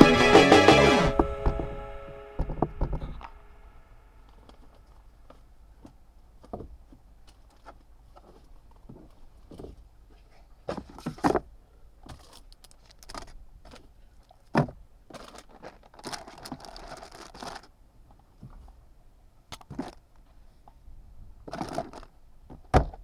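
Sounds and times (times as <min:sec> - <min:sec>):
rustling and crinkling: 0:15.1 - 0:18.8.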